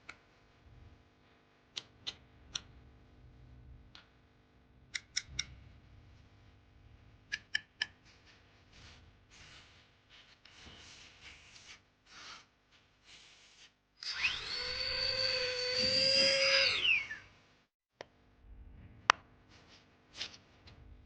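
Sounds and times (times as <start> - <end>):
electric hand tool whirring: 14.0 - 17.2.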